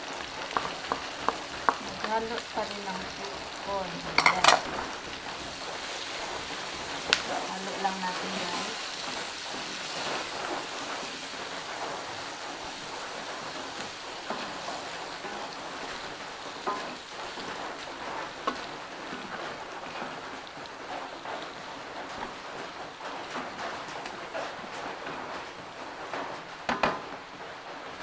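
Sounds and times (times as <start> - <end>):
food sizzling in a frying pan: 0.0 - 27.9
utensil knocking on pan: 0.4 - 4.9, 26.7 - 27.2.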